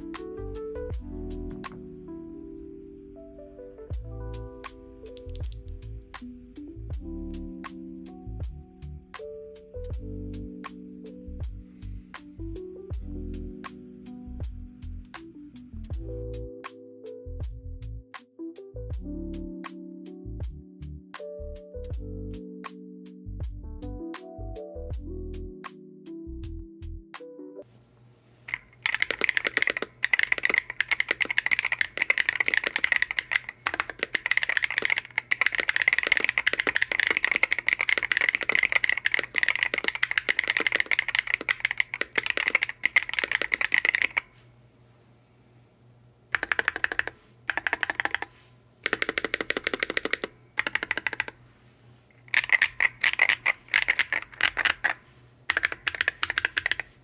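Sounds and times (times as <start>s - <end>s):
mechanical keyboard typing: 5.2s - 5.8s, 28.4s - 44.4s, 46.3s - 51.4s, 52.1s - 57.0s.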